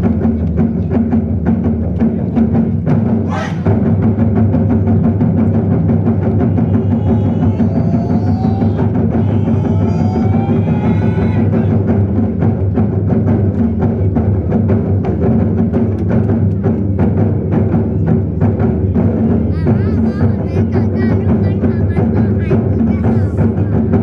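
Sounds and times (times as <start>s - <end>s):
large drums beating: 0.0s - 24.0s.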